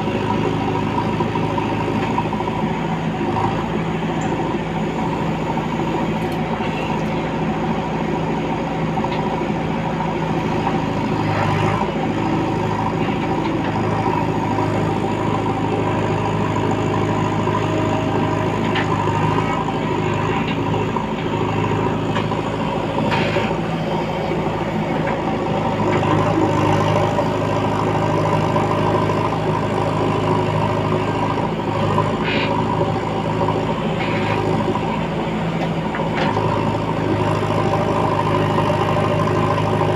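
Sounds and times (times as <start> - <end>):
diesel engine running steadily: 0.0 - 39.9.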